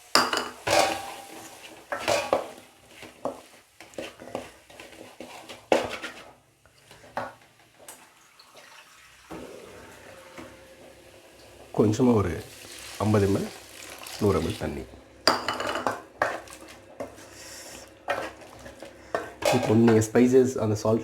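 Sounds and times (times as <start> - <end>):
metal spoon scraping metal pan: 3.8 - 6.4.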